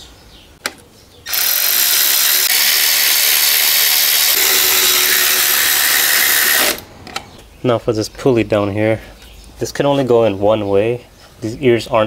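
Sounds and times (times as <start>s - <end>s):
power tool running: 1.3s - 6.8s.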